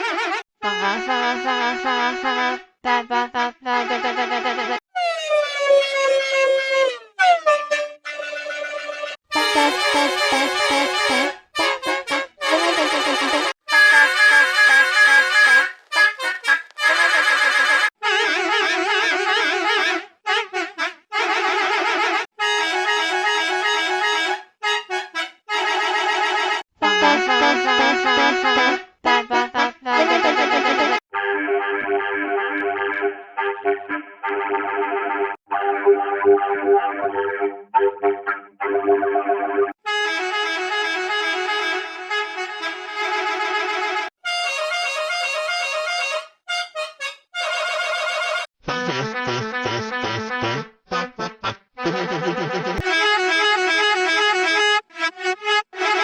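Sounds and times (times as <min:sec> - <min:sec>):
vehicle horn playing a tune: 0:09.3 - 0:17.9, 0:39.9 - 0:50.6.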